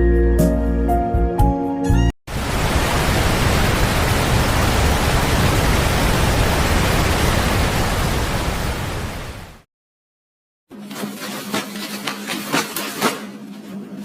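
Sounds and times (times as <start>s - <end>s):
steady rushing noise: 2.3s - 9.6s.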